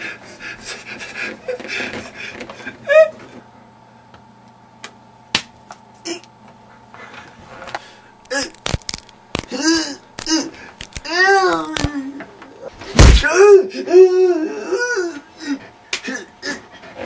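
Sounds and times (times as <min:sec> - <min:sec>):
sharp slaps and hits: 0:05.3 - 0:05.6, 0:12.9 - 0:13.3.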